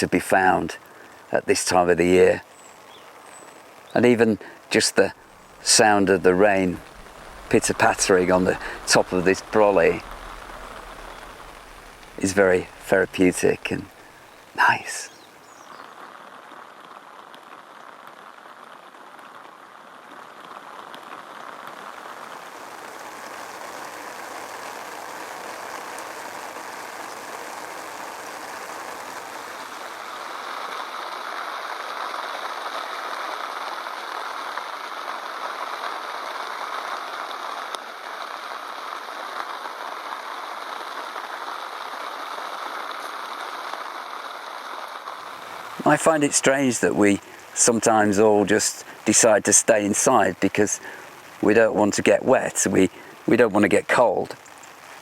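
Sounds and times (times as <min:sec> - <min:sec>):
rain pattering on an umbrella: 0:00.0 - 0:55.0.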